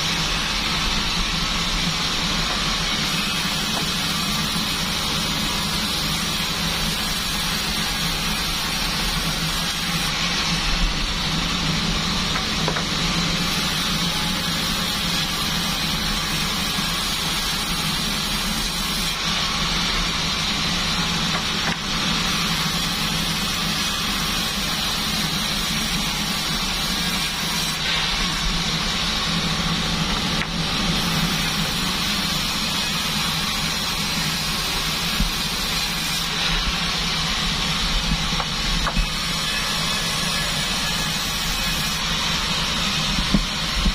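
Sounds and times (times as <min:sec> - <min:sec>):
band sawmill cutting wood: 0:00.0 - 0:43.9.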